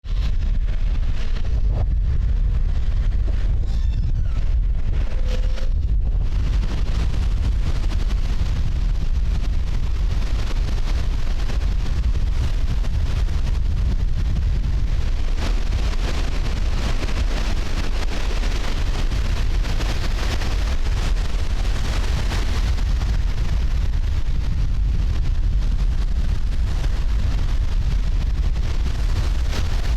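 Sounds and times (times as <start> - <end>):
wind buffeting microphone: 0.0 - 29.9
waves breaking on beach: 14.6 - 23.9.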